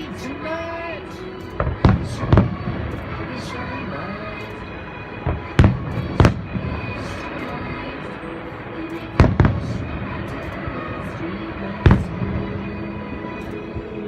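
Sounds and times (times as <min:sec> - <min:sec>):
music playing: 0:00.0 - 0:14.0
fireworks booming: 0:01.6 - 0:03.2, 0:05.2 - 0:07.2, 0:09.2 - 0:10.3, 0:11.8 - 0:12.6.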